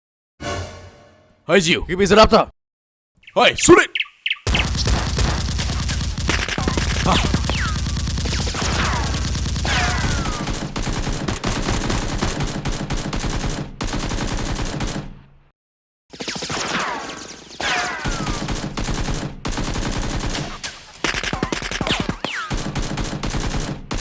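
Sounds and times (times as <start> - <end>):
rapid automatic gunfire: 4.5 - 15.2, 18.1 - 24.0.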